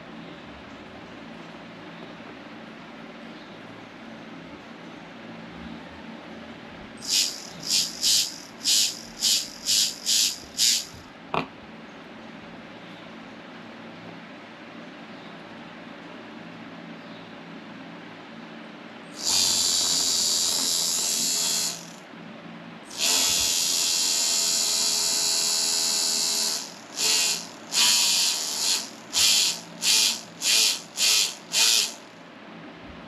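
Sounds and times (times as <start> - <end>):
electric motor whine: 7.0 - 11.0, 19.2 - 22.0, 22.9 - 32.0.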